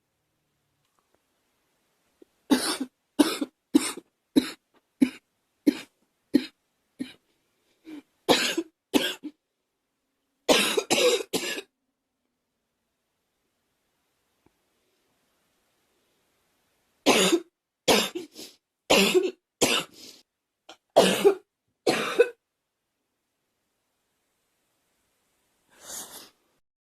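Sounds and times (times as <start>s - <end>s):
woman coughing: 2.5s - 7.2s, 8.3s - 9.3s, 10.5s - 11.7s, 17.1s - 18.3s, 18.9s - 19.9s, 21.0s - 22.4s.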